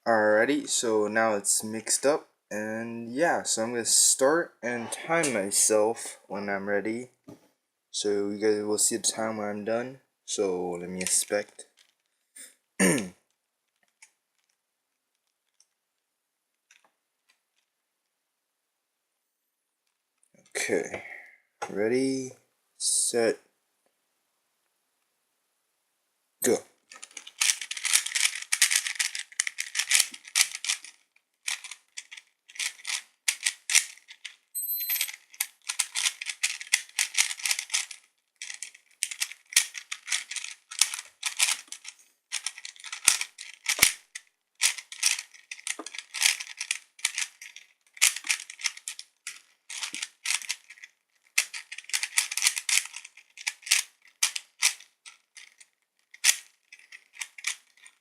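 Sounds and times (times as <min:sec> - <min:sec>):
puzzle cube clicking: 0:11.0 - 0:11.2, 0:26.9 - 0:34.4, 0:35.1 - 0:58.0.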